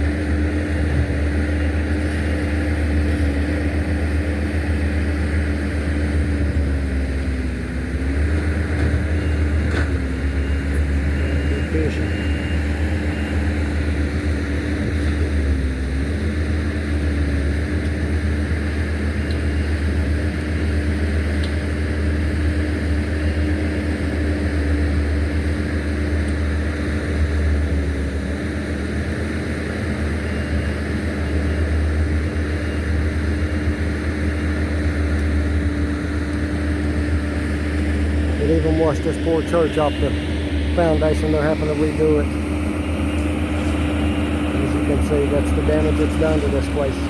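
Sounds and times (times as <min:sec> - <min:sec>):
vehicle engine running: 0:00.0 - 0:47.0.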